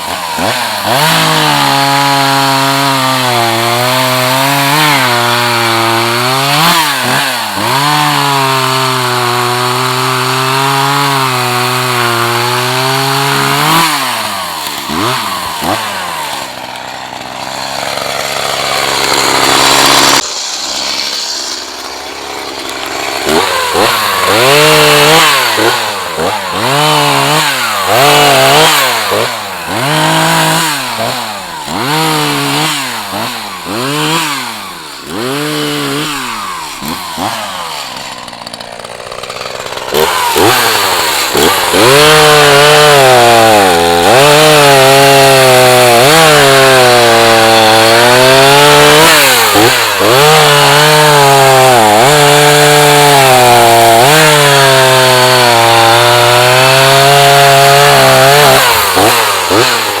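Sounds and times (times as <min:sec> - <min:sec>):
chainsaw revving and cutting wood: 0:00.0 - 1:00.0.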